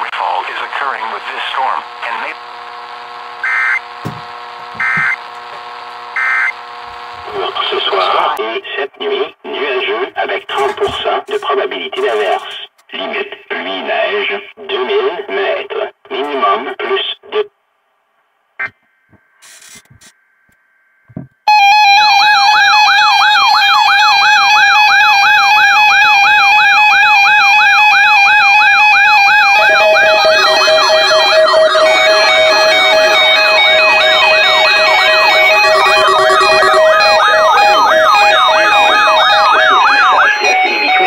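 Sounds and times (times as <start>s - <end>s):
warbling electronic alarm siren: 3.4s - 5.2s, 6.1s - 7.4s, 21.5s - 41.0s
steady lower tone: 29.2s - 41.0s.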